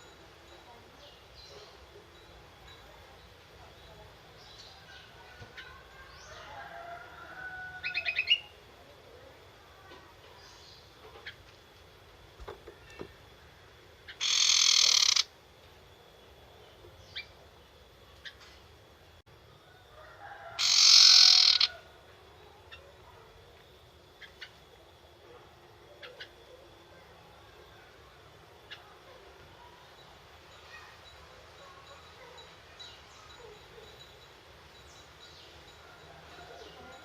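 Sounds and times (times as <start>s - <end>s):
bird harsh rattling call: 14.1s - 15.3s, 20.6s - 21.8s.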